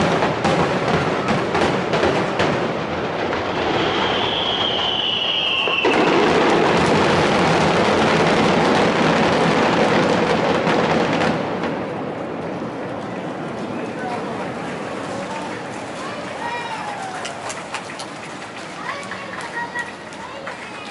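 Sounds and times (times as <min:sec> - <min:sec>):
fireworks bursts and crackles: 0:00.0 - 0:20.9
whistling firework shell: 0:03.2 - 0:08.2.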